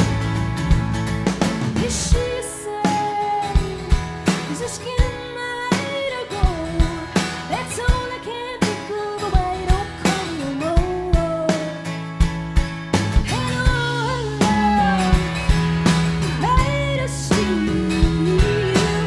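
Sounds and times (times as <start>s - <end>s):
drum hits: 0.0s - 2.4s
guitar chords: 0.0s - 19.0s
woman singing: 1.7s - 11.9s, 13.2s - 15.6s, 16.3s - 19.0s.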